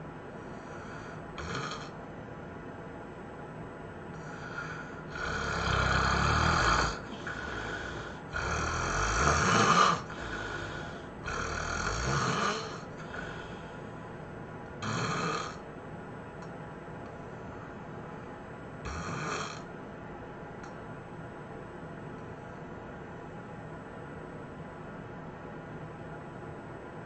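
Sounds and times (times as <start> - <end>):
person snoring: 0.5 - 2.0, 4.2 - 13.7, 14.8 - 15.6, 18.9 - 19.7.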